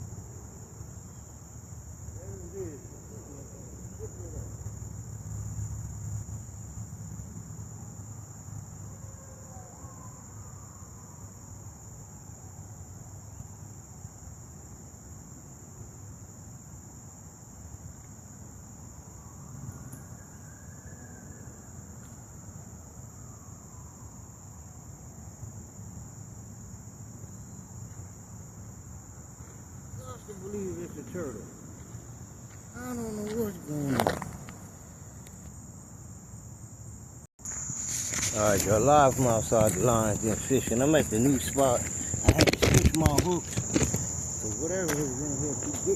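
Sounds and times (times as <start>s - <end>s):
insects chorus: 0.0s - 45.9s.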